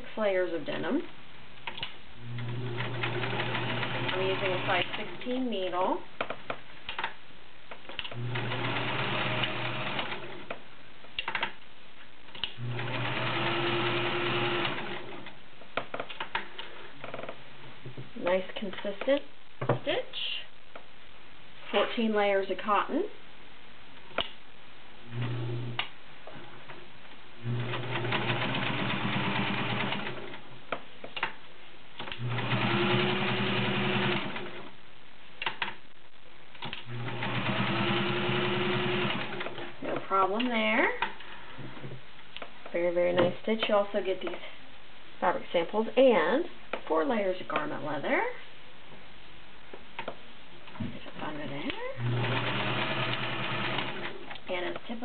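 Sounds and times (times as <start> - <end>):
sewing machine stitching: 2.3 - 5.4, 8.1 - 10.5, 12.6 - 15.3, 27.4 - 30.4, 32.1 - 34.7, 36.7 - 39.6, 51.3 - 54.4.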